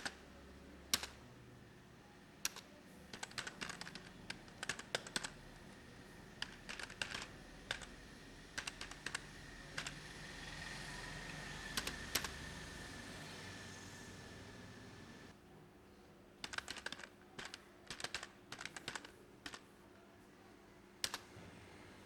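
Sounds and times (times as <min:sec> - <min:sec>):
keyboard typing clicks: 0:06.4 - 0:07.9, 0:21.0 - 0:21.3
faint high whine: 0:07.3 - 0:15.3.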